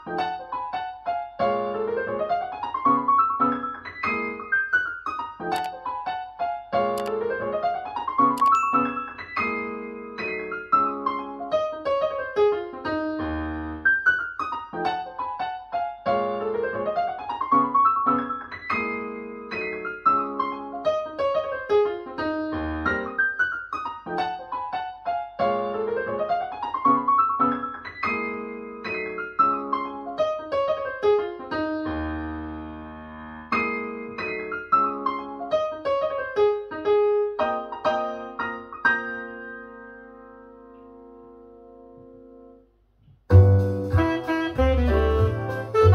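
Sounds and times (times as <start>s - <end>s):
piano music through speaker: 0.0s - 45.9s
deep bass note: 43.3s - 45.9s.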